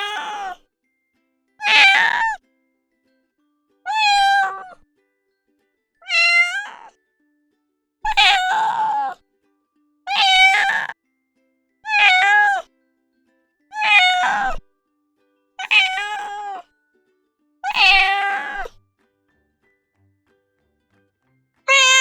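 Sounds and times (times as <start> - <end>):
cat meowing: 0.0 - 0.6, 1.6 - 2.4, 3.9 - 4.8, 6.0 - 6.9, 8.1 - 9.2, 10.1 - 11.0, 11.9 - 12.7, 13.7 - 14.6, 15.6 - 16.7, 17.6 - 18.8, 21.7 - 22.0.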